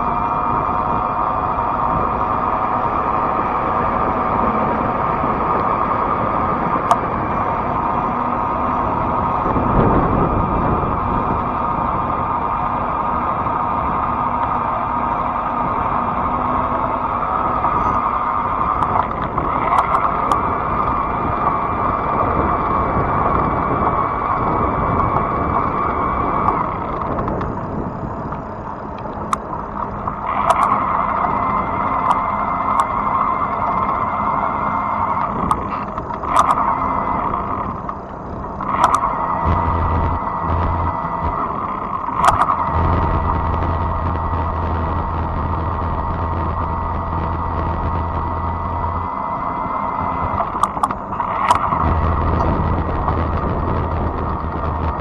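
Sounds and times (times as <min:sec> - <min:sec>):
bike tires rolling: 0:00.0 - 0:55.0
tyres and motor humming: 0:00.0 - 0:55.0
wind on microphone: 0:00.0 - 0:55.0
sharp ticks: 0:17.6 - 0:21.6, 0:28.3 - 0:55.0.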